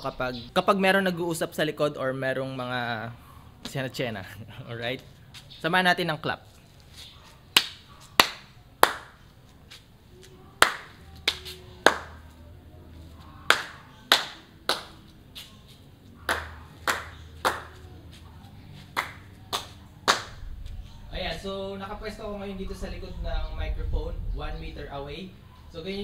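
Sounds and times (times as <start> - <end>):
hand claps with room echo: 7.6 - 9.2, 10.6 - 12.2, 13.5 - 15.1, 16.2 - 18.2, 18.8 - 20.4.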